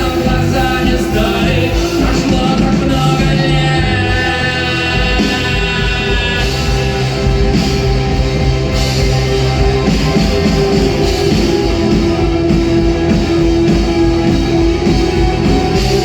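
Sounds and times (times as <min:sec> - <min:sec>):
person singing: 0:00.0 - 0:08.3
drums: 0:00.0 - 0:16.0
guitar: 0:00.0 - 0:16.0.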